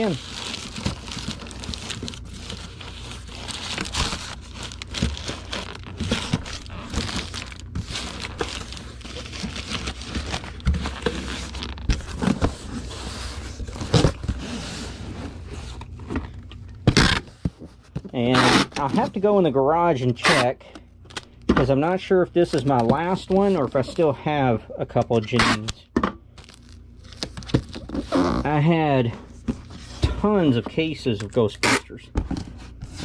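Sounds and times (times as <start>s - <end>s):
bubble wrap crinkling: 0.0s - 16.0s, 26.4s - 28.4s.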